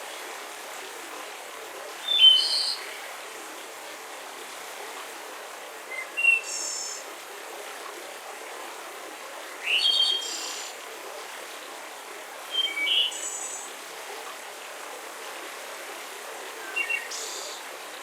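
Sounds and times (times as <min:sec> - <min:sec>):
forest ambience hiss: 0:00.0 - 0:07.4, 0:09.4 - 0:11.0, 0:11.7 - 0:14.8, 0:15.4 - 0:18.0
songbirds singing: 0:16.6 - 0:17.7.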